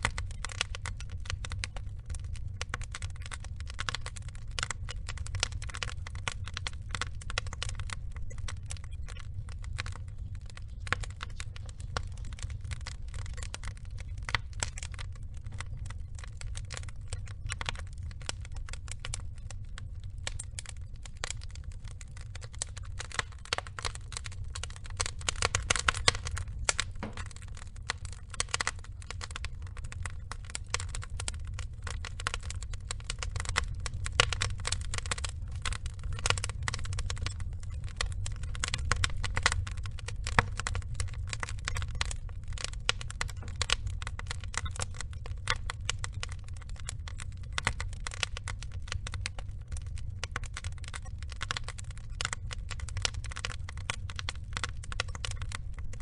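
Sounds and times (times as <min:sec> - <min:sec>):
burning logs crackling and popping: 0:00.0 - 0:56.0
low rumble of fire: 0:00.0 - 0:56.0.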